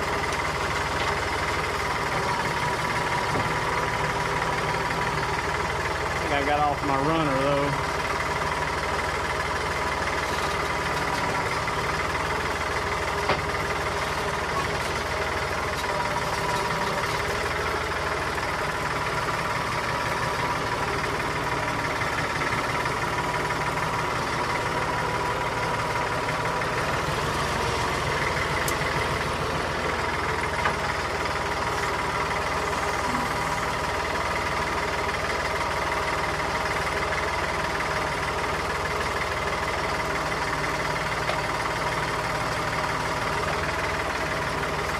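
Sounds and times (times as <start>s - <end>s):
tractor engine running: 0.0s - 44.9s
faint knocks of shifting load: 12.9s - 31.8s.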